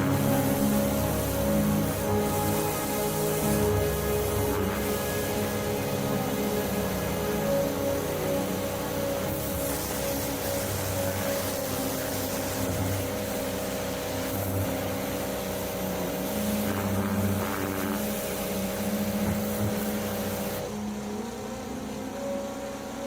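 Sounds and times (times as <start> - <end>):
water spray hissing: 0.0 - 20.6
pressure washer running: 0.0 - 20.7.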